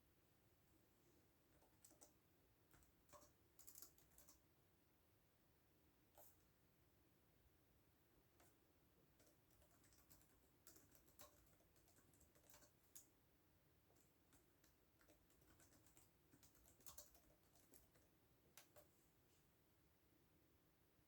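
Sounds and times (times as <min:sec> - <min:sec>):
typing on computer keyboard: 0:01.5 - 0:04.4, 0:08.4 - 0:13.1, 0:13.9 - 0:18.9.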